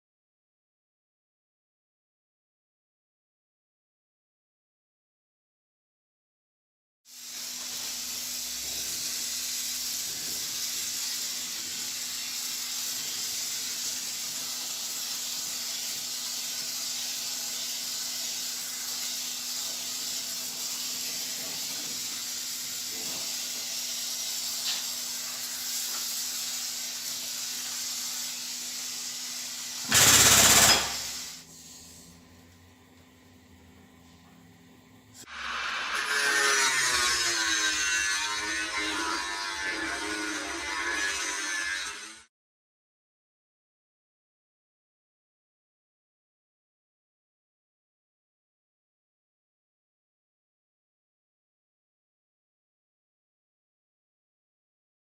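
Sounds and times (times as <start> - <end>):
loud steady hiss: 7.1 - 31.5
loud hissing burst: 24.2 - 31.5.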